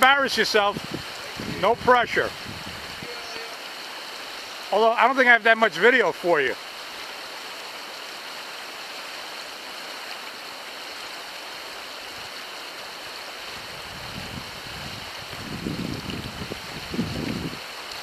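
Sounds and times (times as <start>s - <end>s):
river rapids rushing: 0.0s - 13.9s.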